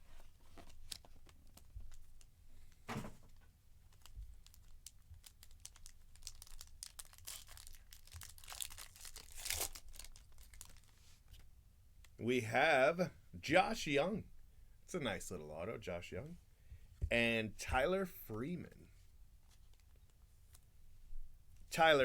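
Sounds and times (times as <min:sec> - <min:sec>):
small clicks and rustles: 0:00.0 - 0:09.2, 0:19.4 - 0:20.7
plastic wrapping crinkling and tearing: 0:03.9 - 0:11.4.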